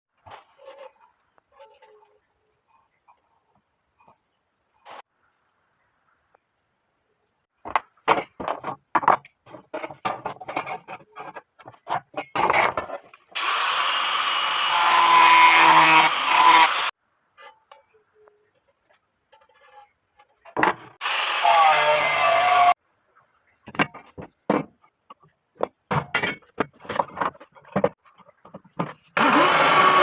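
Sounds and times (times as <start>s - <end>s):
knocks and clatters: 7.6s - 13.4s, 23.6s - 29.1s
angle grinder whine: 13.4s - 16.9s, 29.2s - 30.0s.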